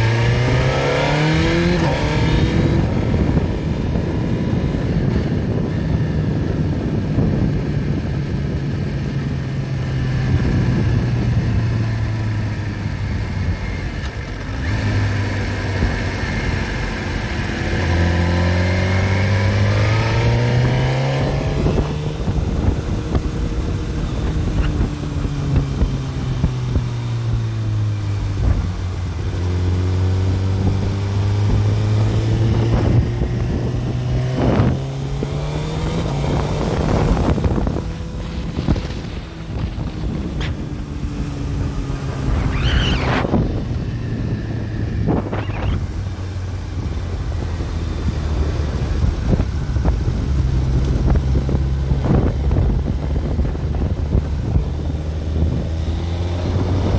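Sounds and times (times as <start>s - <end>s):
engine revving up and down: 0.0s - 4.9s, 14.5s - 25.6s, 29.3s - 56.9s.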